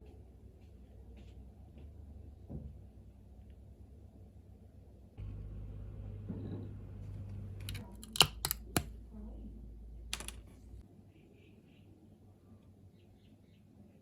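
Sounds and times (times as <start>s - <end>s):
low steady hum: 3.2s - 10.9s
sharp clicks: 7.3s - 9.0s.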